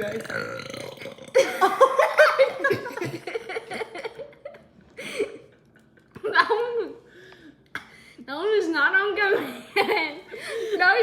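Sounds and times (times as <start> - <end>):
people laughing and giggling: 1.4 - 7.0.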